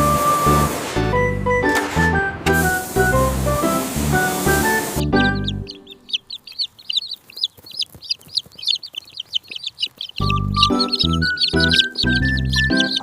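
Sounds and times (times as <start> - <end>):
background music: 0.0 - 6.2, 10.2 - 13.0
chicks peeping: 3.8 - 13.0.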